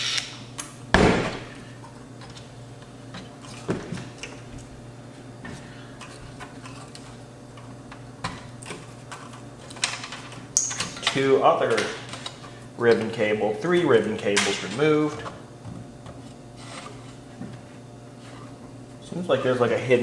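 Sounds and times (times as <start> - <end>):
loud knock: 1.0 - 1.7.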